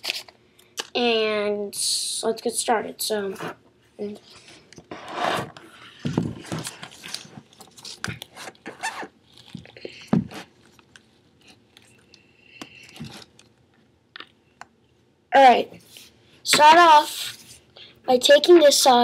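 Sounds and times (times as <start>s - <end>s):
paper rustling and crinkling: 5.9s - 12.0s.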